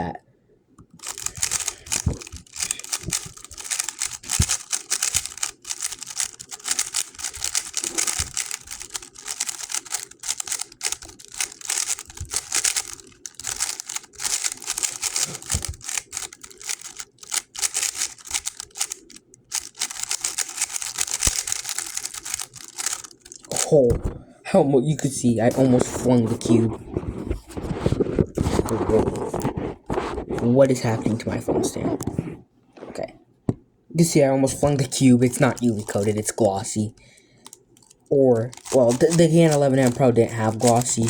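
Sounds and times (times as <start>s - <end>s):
speedcube clicking turns: 1.0s - 23.7s, 35.3s - 36.7s, 37.4s - 41.0s.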